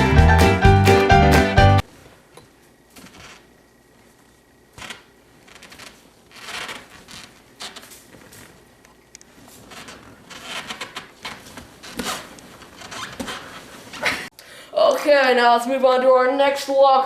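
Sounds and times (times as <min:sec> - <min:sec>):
music: 0:00.0 - 0:01.8
faint rustling and handling: 0:01.8 - 0:14.3.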